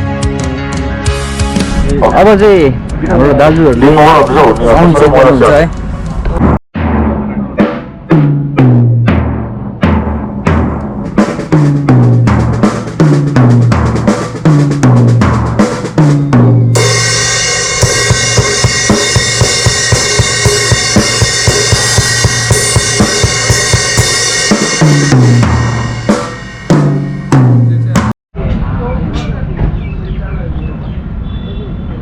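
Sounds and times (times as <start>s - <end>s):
kick drum and tom hits: 6.3s - 28.1s
cymbals crashing: 16.7s - 27.5s.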